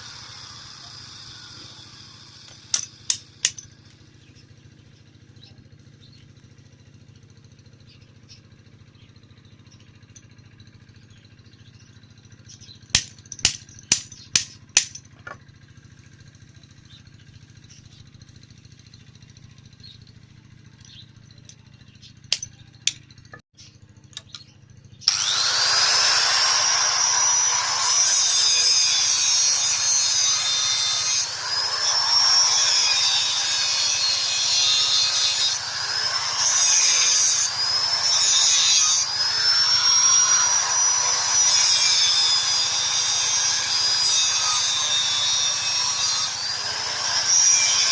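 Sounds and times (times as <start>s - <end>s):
angle grinder grinding metal: 0.0s - 4.3s, 25.0s - 47.9s.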